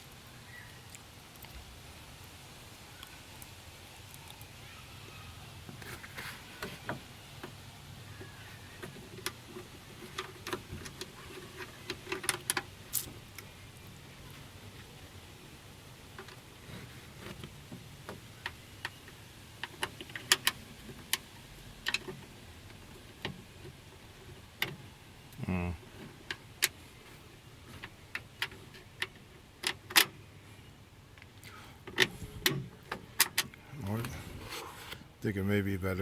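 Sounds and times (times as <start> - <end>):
person grunting: 25.4 - 25.8.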